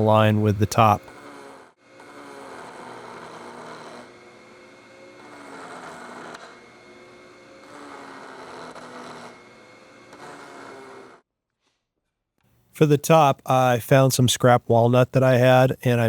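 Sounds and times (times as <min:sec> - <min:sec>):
router cutting wood: 0:00.0 - 0:11.2
router motor whine: 0:01.0 - 0:11.2.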